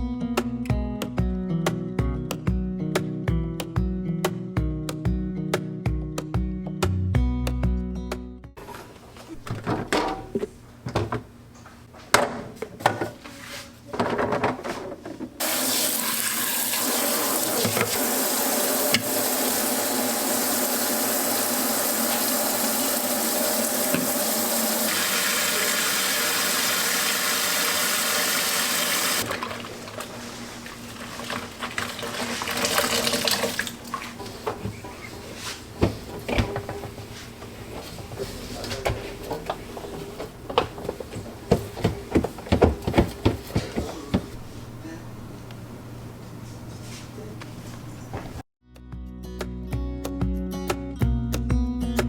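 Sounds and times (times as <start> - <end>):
tap running into sink: 15.4 - 29.4.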